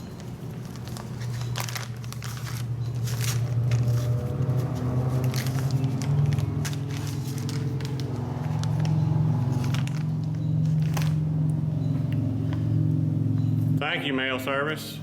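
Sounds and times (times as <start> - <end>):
low machine hum: 0.0 - 15.0.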